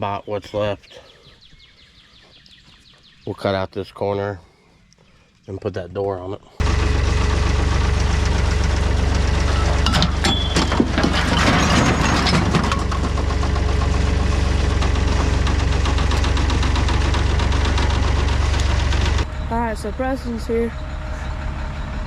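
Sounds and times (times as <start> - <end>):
vehicle engine idling: 6.6 - 22.0
clattering noise: 9.4 - 19.3.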